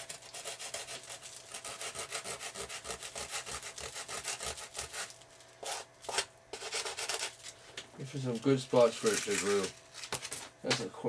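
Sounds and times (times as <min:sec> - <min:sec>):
sandpaper rubbing on foam: 0:00.0 - 0:05.9.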